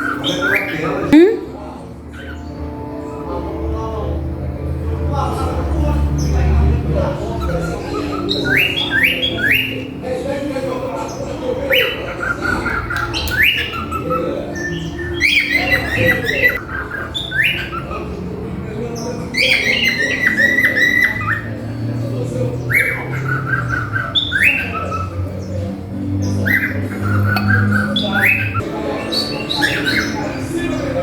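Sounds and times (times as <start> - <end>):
squawky notes: 19.2 - 31.0.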